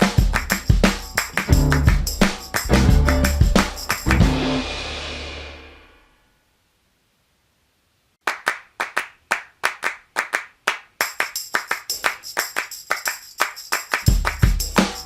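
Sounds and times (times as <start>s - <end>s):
hand-clap beat: 0.0s - 4.5s, 8.2s - 15.0s
jingling tambourine: 0.0s - 4.7s, 11.0s - 15.0s.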